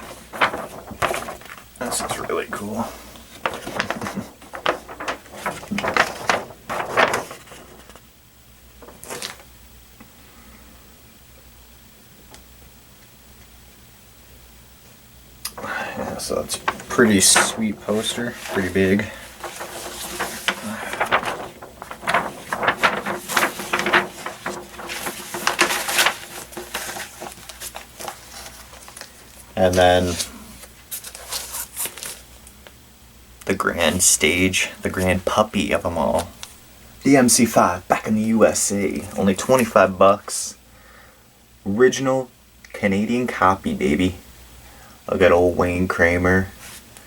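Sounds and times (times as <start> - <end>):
paper crinkle: 0.0 - 8.1, 8.8 - 9.5, 15.5 - 32.3
paper rustling: 0.0 - 8.1, 8.8 - 9.5, 15.5 - 32.3, 38.2 - 39.8, 46.5 - 47.0.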